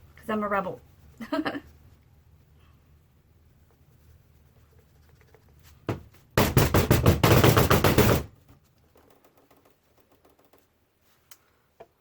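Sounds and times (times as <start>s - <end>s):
clatter of knocks and rattles: 6.4s - 10.7s.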